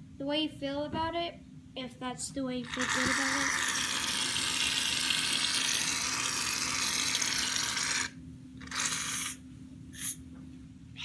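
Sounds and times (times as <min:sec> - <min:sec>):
aerosol can hissing foam: 0:02.7 - 0:09.4, 0:10.0 - 0:10.2.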